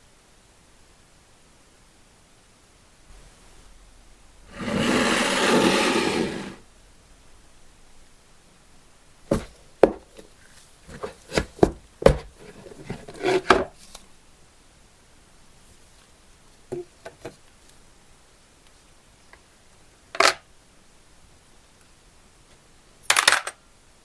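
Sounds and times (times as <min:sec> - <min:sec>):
rubbing scrubbing noise: 0:04.5 - 0:06.6.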